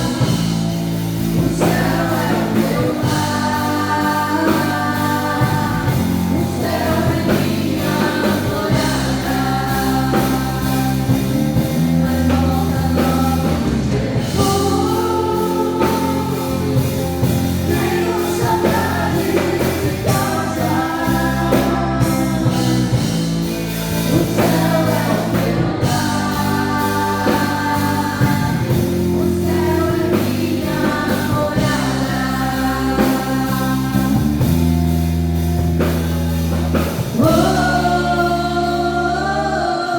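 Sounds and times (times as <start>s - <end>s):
gospel singers with band: 0.0s - 39.9s.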